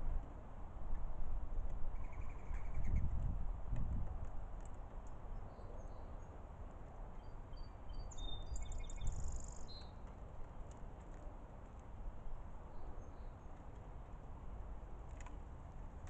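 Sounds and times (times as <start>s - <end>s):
small birds chirping: 1.9s - 3.2s, 5.3s - 6.4s, 7.1s - 10.1s, 12.7s - 13.7s.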